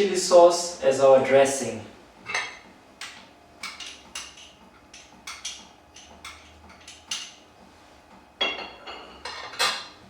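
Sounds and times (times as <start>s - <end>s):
kitchenware clinking on plate: 2.3s - 7.4s, 8.4s - 9.9s.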